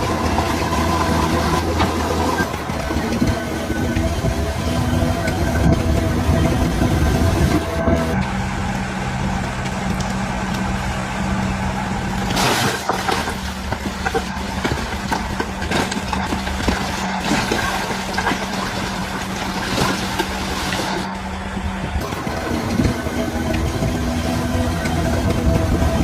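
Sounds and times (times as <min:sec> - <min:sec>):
bulldozer diesel engine running: 0:00.0 - 0:26.0.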